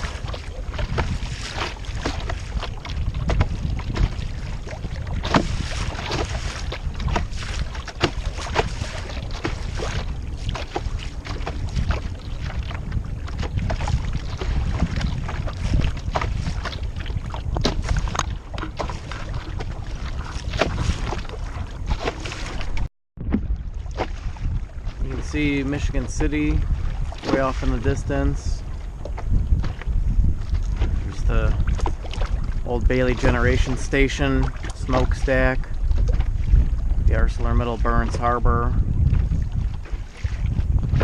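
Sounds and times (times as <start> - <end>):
water slapping against hull: 0.0 - 41.0
wind buffeting microphone: 0.0 - 41.0.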